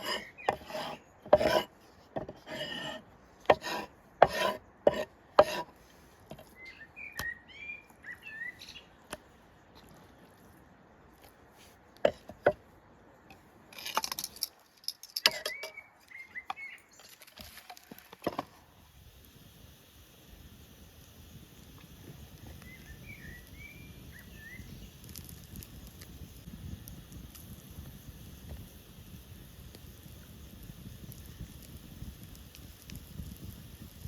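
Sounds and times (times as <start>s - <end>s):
utensils knocking and scraping: 0.0s - 5.7s
bird chirping: 6.5s - 9.0s, 15.3s - 17.1s, 22.6s - 24.9s.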